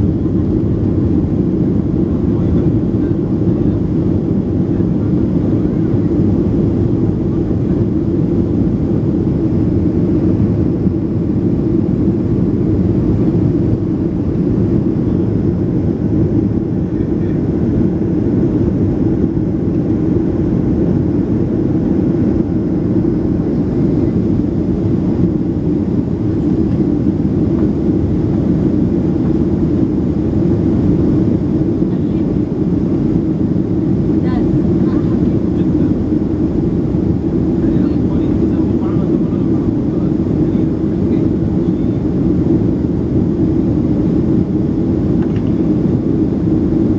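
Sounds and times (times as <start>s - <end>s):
jet engines rumbling in cabin: 0.0s - 46.9s.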